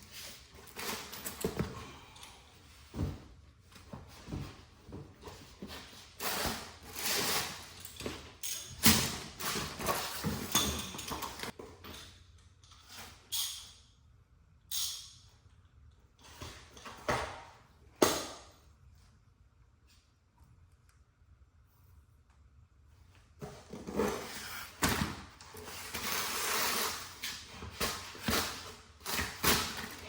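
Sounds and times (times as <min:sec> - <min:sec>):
tools and parts clattering: 0:00.1 - 0:03.2, 0:05.2 - 0:12.9.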